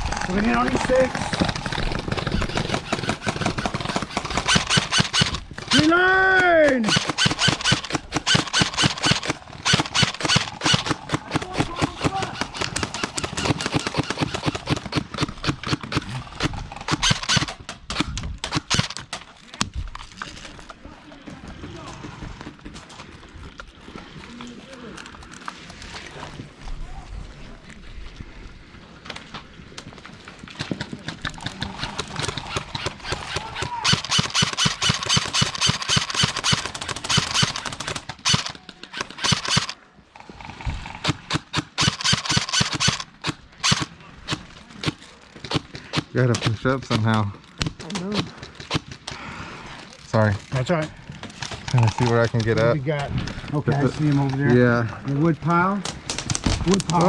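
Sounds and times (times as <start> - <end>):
airsoft guns firing rapidly: 0.3 - 19.2, 30.6 - 39.8, 40.8 - 47.2.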